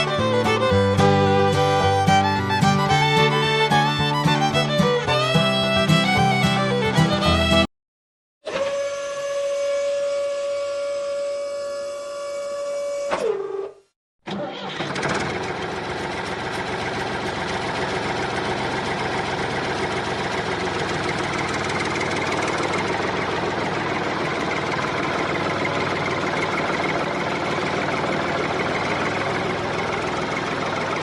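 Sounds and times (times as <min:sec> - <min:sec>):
small engine running: 0:14.3 - 0:31.0.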